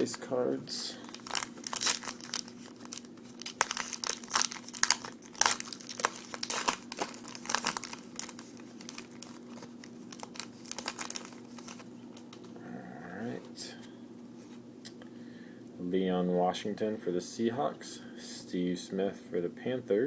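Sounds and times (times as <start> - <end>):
plastic wrapper crinkling and tearing: 1.0 - 12.4.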